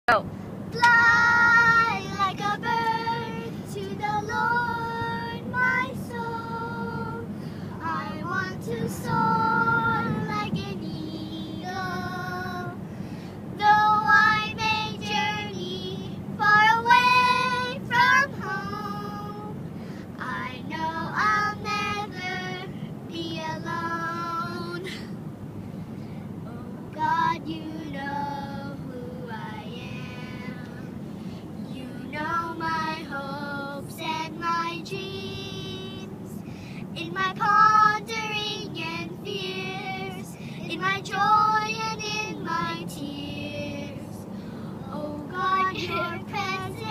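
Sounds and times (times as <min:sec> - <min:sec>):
steady low hum: 0:00.1 - 0:46.9.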